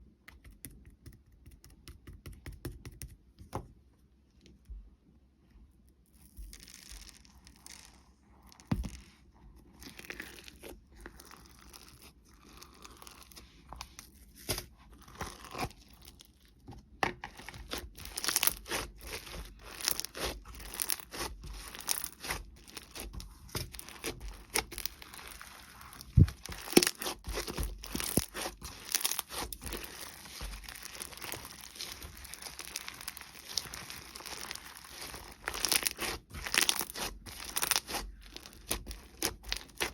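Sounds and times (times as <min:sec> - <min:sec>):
slime squishing and popping: 0:17.2 - 0:39.9.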